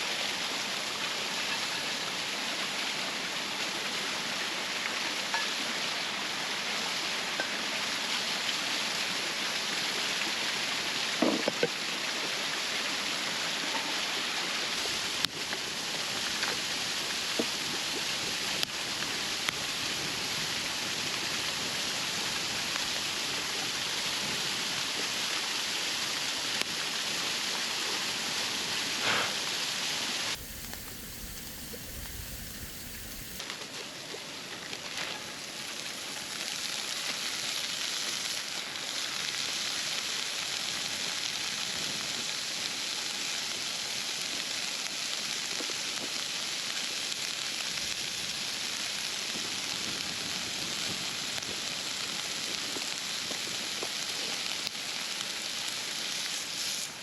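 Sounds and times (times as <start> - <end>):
waterfall rushing: 30.3 - 33.4.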